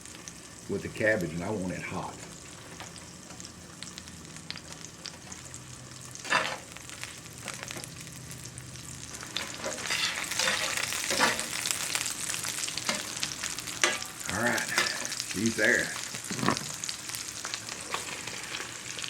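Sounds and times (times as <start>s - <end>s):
butter sizzling in a skillet: 0.0s - 19.0s
cabbage sizzling and stirred: 0.0s - 19.0s.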